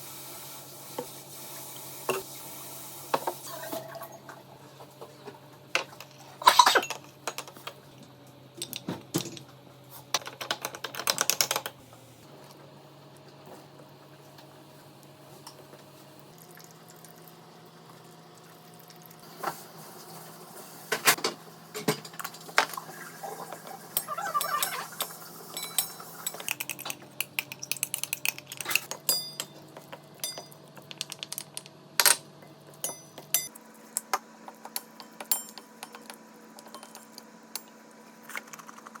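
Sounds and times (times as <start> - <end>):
utensils clinking against dishes: 6.4 - 7.7, 23.9 - 31.0, 32.0 - 33.6, 34.9 - 37.8.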